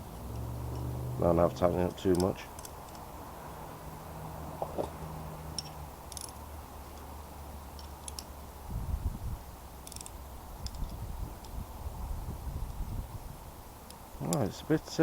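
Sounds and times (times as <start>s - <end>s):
low rumbling handling noise: 0.0s - 7.1s
spanner clicking on metal: 1.9s - 3.1s, 5.5s - 7.1s, 7.7s - 8.4s, 9.8s - 11.6s.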